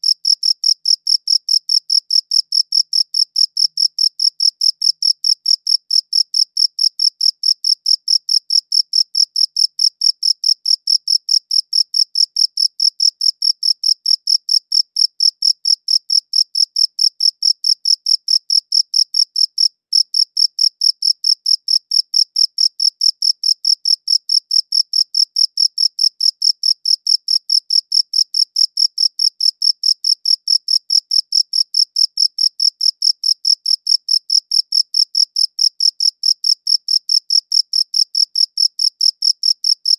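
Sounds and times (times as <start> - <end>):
cricket chirping: 0.0 - 39.9.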